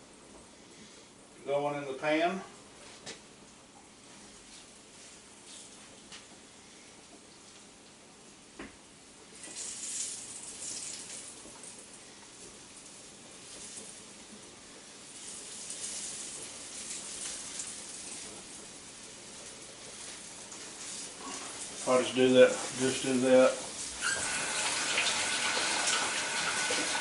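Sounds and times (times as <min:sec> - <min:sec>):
chicken sizzling in oil: 0:22.7 - 0:27.0.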